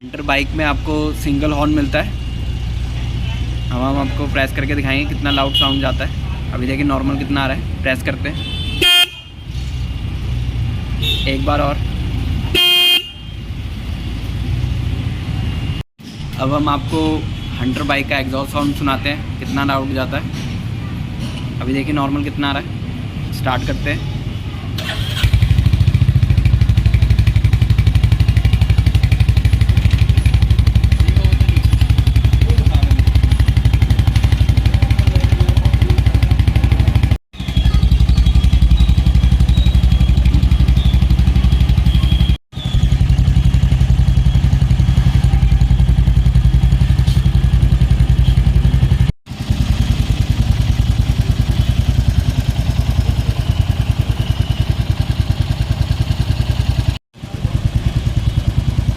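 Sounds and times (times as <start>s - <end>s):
motorcycle engine starting and idling: 24.8s - 58.9s.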